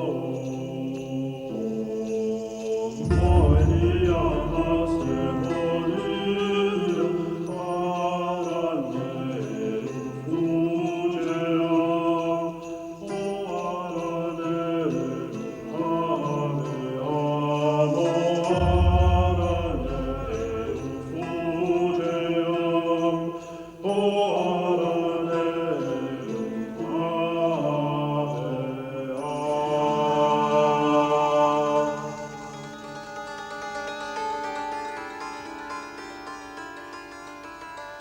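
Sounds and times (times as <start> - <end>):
slow chant-like chords: 0.0 - 32.9.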